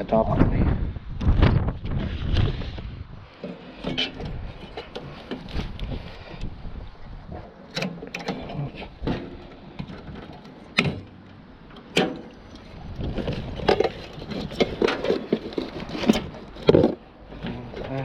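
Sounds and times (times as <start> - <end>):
metallic clicks and clatter: 11.7 - 18.0.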